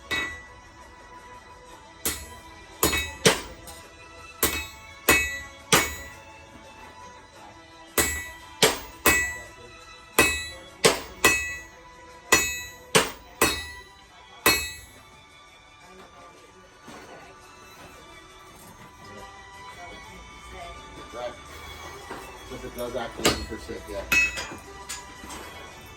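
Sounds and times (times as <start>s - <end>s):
hammer striking metal ringing: 0.0s - 0.7s, 2.0s - 3.8s, 4.4s - 6.4s, 8.0s - 15.1s, 22.8s - 25.2s.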